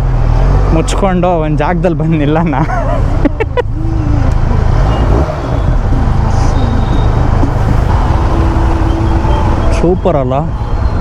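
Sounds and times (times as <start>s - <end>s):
road traffic rumble: 0.0s - 11.0s
motorcycle engine running: 3.2s - 11.0s.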